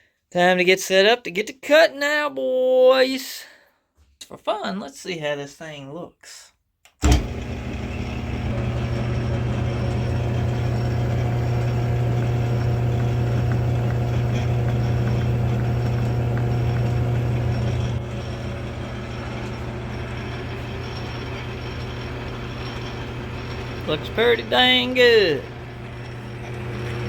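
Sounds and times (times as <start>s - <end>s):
metal lathe motor hum: 7.0s - 27.0s.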